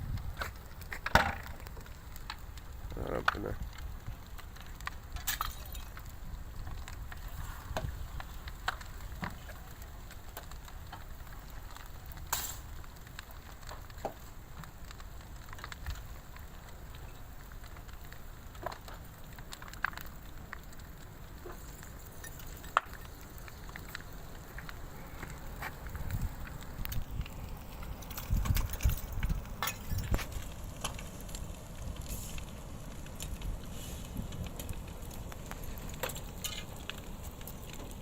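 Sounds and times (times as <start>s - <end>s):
low steady rumble: 0.0s - 13.5s
fire crackling: 0.0s - 38.0s.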